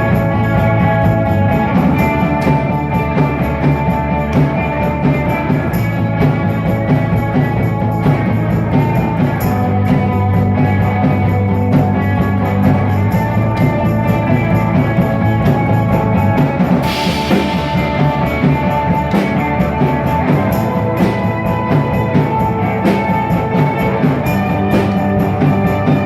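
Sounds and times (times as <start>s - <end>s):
rock band playing: 0.0s - 26.0s
cymbal crash: 16.8s - 19.5s.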